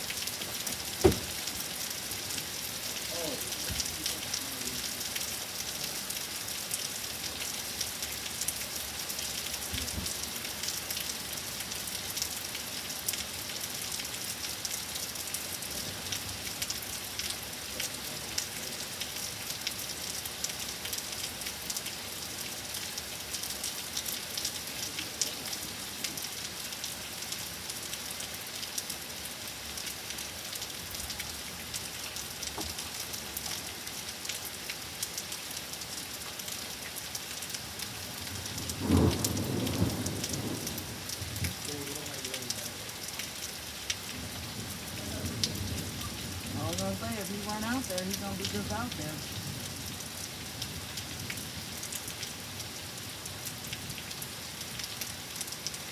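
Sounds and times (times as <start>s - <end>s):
steady rain falling: 0.0s - 55.9s.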